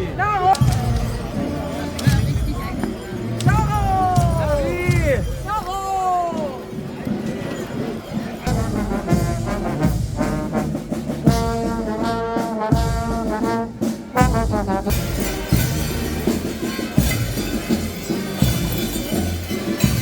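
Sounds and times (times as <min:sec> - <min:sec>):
drum strikes: 0:00.0 - 0:06.0, 0:08.4 - 0:20.0
horns playing a tune: 0:08.5 - 0:20.0.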